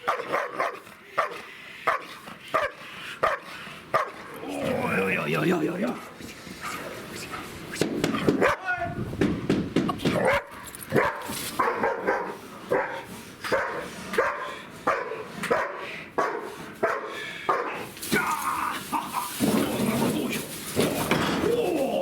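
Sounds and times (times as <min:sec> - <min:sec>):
dog barking: 0:00.0 - 0:04.3, 0:08.4 - 0:08.6, 0:10.2 - 0:17.9.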